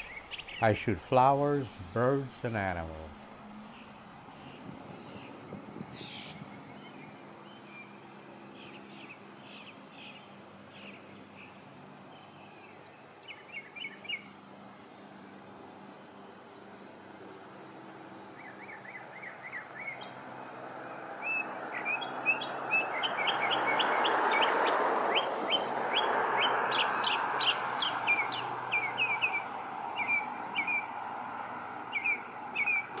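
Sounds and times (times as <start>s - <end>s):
mockingbird singing: 0.0s - 7.9s, 12.2s - 14.3s, 18.4s - 20.2s, 21.2s - 30.9s, 31.9s - 33.0s.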